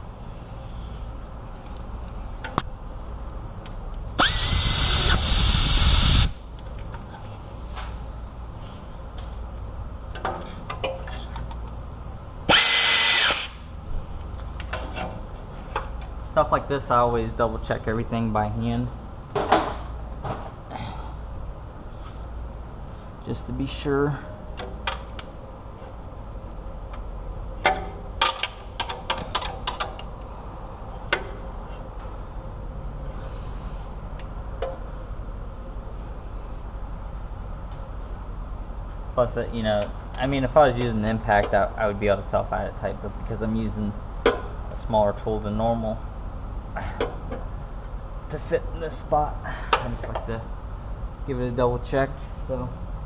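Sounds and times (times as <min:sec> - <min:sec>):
cordless power tool whine: 0:04.2 - 0:06.4, 0:12.5 - 0:13.6.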